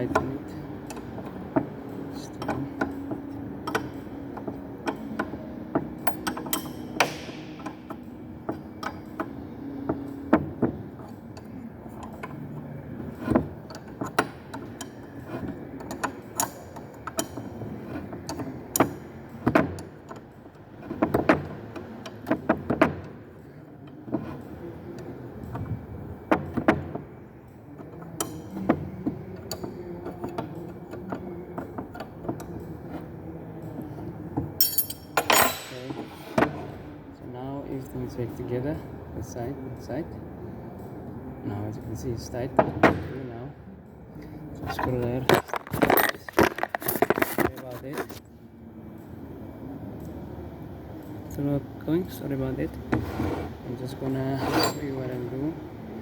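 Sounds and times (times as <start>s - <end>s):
spanner clicking on nut: 0.0s - 9.3s, 13.1s - 22.9s.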